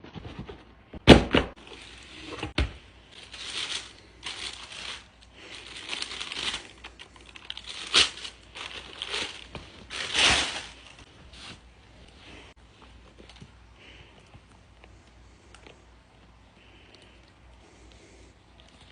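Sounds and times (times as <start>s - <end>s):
paper packaging rustling and tearing: 1.6s - 11.7s.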